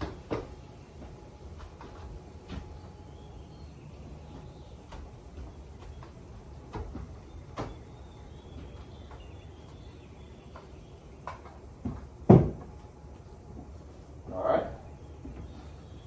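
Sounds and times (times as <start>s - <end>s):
equipment knocks and clunks: 11.8s - 12.8s.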